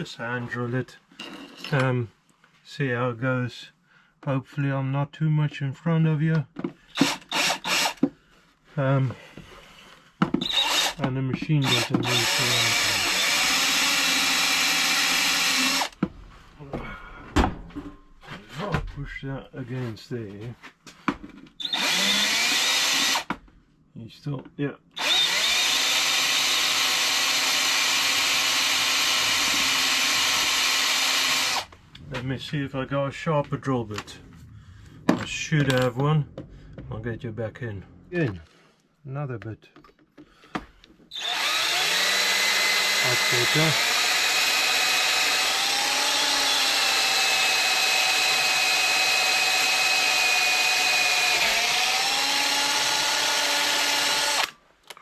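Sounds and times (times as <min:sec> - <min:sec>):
electric drill drilling into metal: 0:07.0 - 0:08.0, 0:10.4 - 0:11.0, 0:11.6 - 0:16.0, 0:21.6 - 0:23.3, 0:25.0 - 0:31.7, 0:41.1 - 0:54.6.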